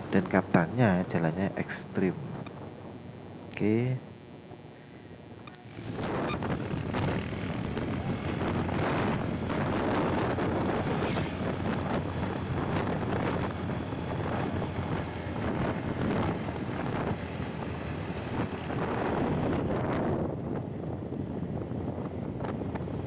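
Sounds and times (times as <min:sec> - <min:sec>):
road and vehicle noise: 0:00.0 - 0:23.0
wind buffeting microphone: 0:05.7 - 0:23.0.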